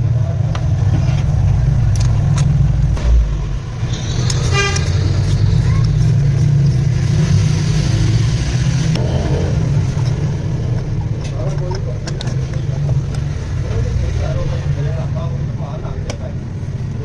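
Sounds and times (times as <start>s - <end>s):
low rumble: 0.0s - 11.1s
horn toot: 3.9s - 5.4s.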